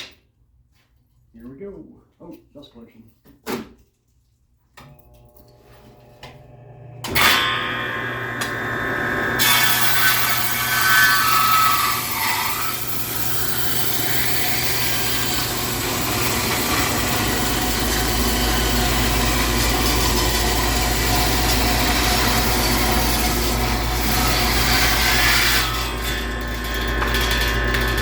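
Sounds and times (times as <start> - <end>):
table saw cutting wood: 7.0 - 28.0.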